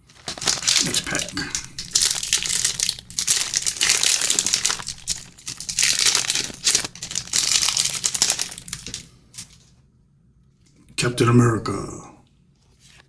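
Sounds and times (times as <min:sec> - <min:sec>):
foil pack crinkling and tearing: 0:00.0 - 0:09.7.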